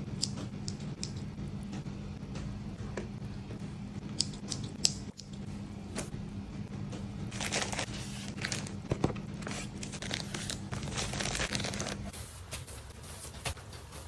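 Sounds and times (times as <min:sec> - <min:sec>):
packaging crinkling and tearing: 0:07.4 - 0:08.8, 0:09.4 - 0:12.1.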